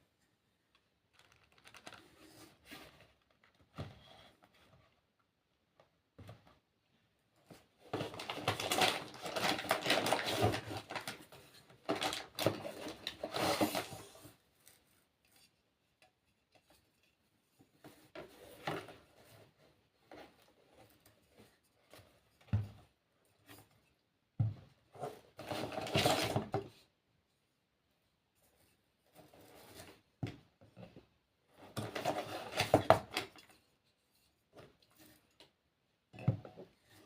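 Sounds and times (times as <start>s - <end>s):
packaging rustling and clattering: 1.1s - 3.8s, 7.8s - 14.4s, 25.1s - 26.7s, 31.6s - 33.5s.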